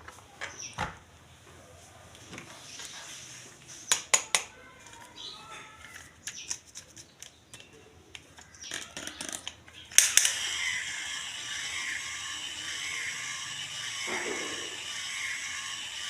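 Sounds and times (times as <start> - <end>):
plastic toy clicking and rustling: 5.8 - 16.0.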